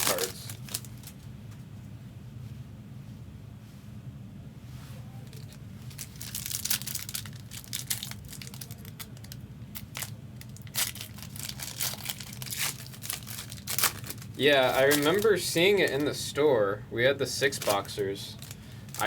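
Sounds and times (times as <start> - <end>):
wrapper tearing and crinkling: 0.0 - 1.2, 5.4 - 16.1, 17.5 - 19.0.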